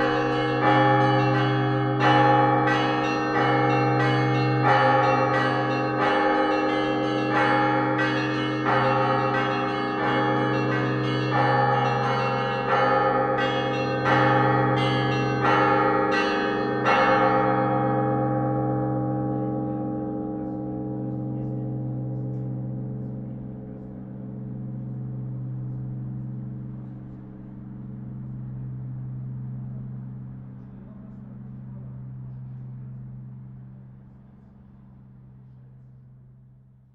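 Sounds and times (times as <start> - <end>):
church bells ringing: 0.0 - 36.6
deep hum of large bell: 0.0 - 36.9.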